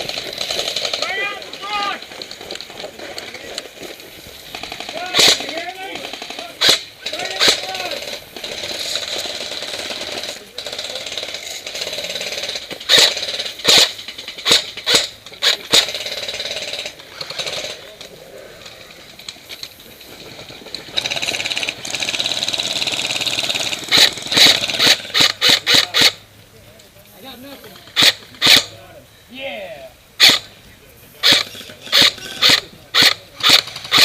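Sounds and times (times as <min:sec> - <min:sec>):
airsoft guns firing: 0:00.0 - 0:03.6, 0:04.4 - 0:17.8, 0:20.8 - 0:26.2, 0:28.0 - 0:28.7, 0:30.2 - 0:30.5, 0:31.2 - 0:34.0.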